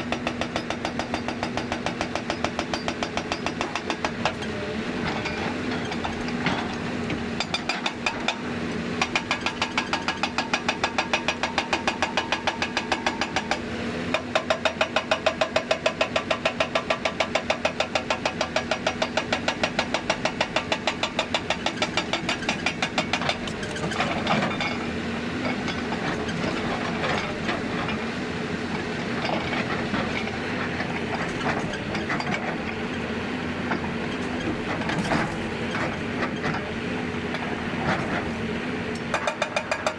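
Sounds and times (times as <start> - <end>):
hydraulic breaker hammering rock: 0.0 - 32.9, 39.0 - 39.9
diesel engine running: 18.0 - 39.3.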